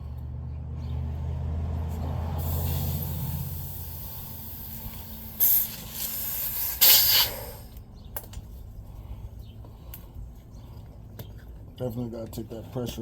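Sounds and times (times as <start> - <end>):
air hissing from tire valve: 2.3 - 7.8.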